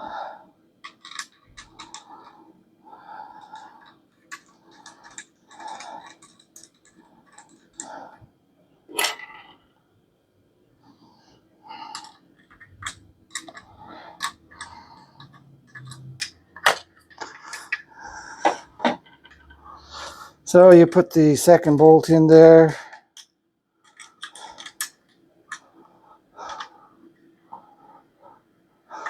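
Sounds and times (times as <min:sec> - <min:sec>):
metal parts clicking and knocking: 0:00.8 - 0:02.1, 0:03.4 - 0:07.9, 0:11.9 - 0:19.6, 0:23.2 - 0:25.6.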